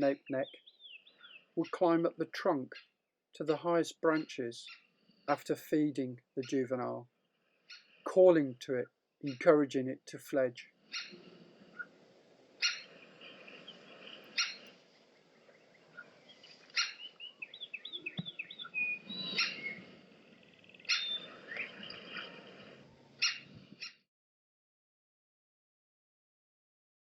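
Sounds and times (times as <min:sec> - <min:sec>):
faint songbirds twittering: 0:00.0 - 0:24.0
woodpecker sharp kik call: 0:10.8 - 0:11.9, 0:12.6 - 0:14.8, 0:16.0 - 0:19.9, 0:20.7 - 0:22.5.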